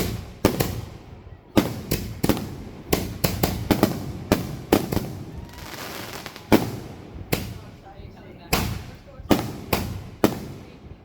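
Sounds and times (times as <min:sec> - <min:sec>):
fireworks bangs: 0:00.0 - 0:11.0.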